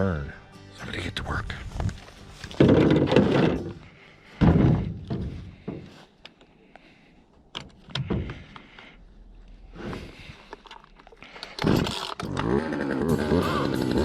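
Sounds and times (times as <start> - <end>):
heavy thunks and knocks: 4.4 - 5.9.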